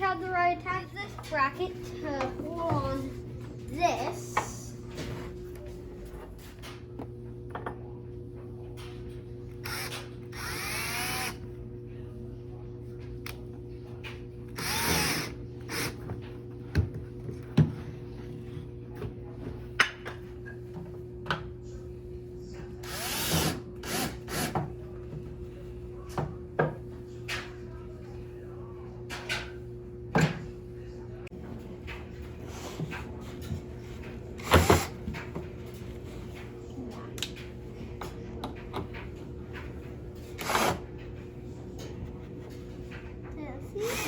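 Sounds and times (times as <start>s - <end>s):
power drill whirring: 9.6s - 11.4s, 14.6s - 16.0s, 22.8s - 24.5s, 40.4s - 40.8s.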